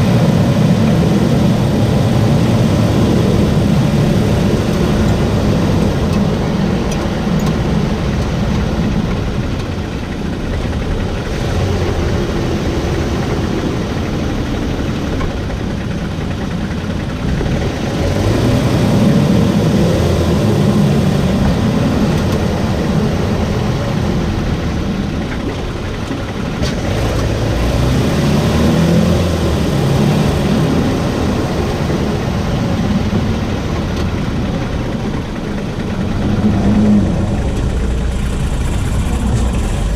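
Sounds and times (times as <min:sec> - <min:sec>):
road noise: 0:00.0 - 0:39.9
vehicle engine running: 0:00.0 - 0:39.9.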